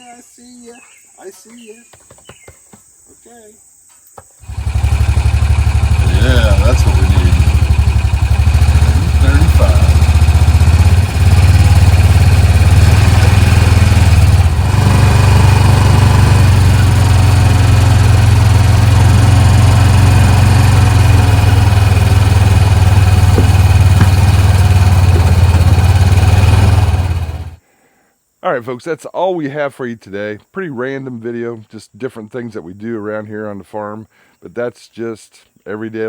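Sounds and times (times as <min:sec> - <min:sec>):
engine running loud: 0:04.4 - 0:27.6.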